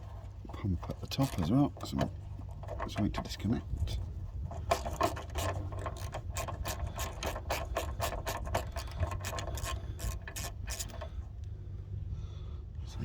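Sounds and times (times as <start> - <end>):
ratchet spanner clicking: 4.5 - 11.2.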